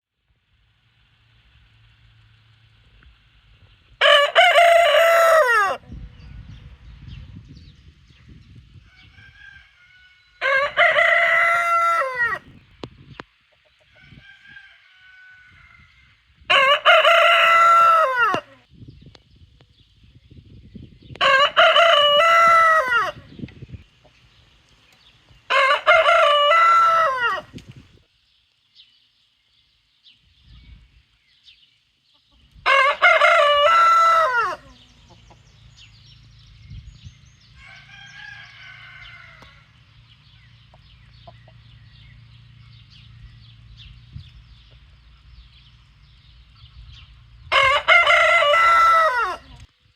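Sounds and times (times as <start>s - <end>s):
rooster crowing: 4.0s - 5.8s, 8.9s - 12.5s, 13.9s - 18.6s, 21.2s - 23.2s, 25.5s - 27.5s, 32.6s - 34.9s, 37.6s - 39.8s, 47.5s - 49.6s.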